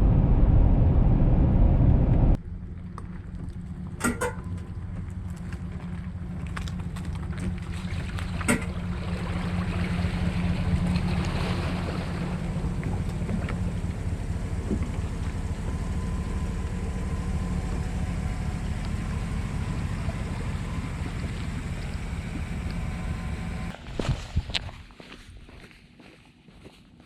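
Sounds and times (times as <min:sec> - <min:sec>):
wind noise: 0:00.0 - 0:02.4, 0:17.8 - 0:25.5
outboard motor running: 0:02.4 - 0:23.8
water rushing: 0:07.5 - 0:23.7.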